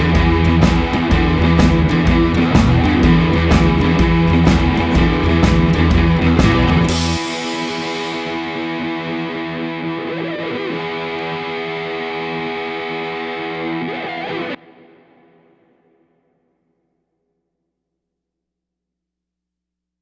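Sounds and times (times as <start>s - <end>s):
distorted electric guitar chord: 0.0s - 15.9s.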